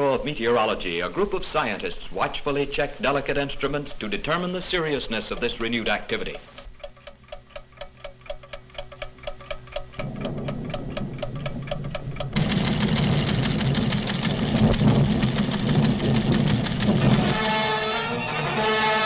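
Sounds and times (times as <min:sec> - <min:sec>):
instruments ticking with ringing tone: 0:03.6 - 0:17.4
low rumble of tremors: 0:09.9 - 0:17.6.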